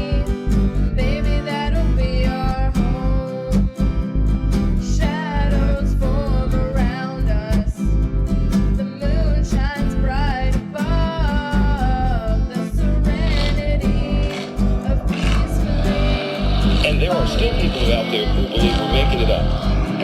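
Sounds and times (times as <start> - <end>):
deep bass: 0.0 - 20.0
guitar: 0.0 - 20.0
person singing wavering melody: 8.9 - 20.0
steady beat: 14.5 - 20.0.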